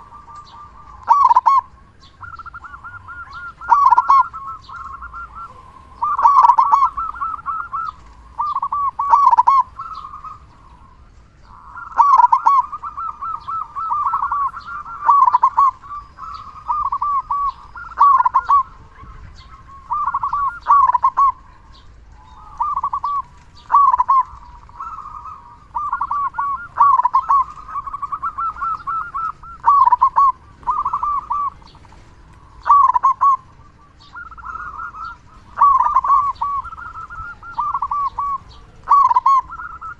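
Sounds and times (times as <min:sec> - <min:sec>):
dove cooing: 0:00.0 - 0:39.9.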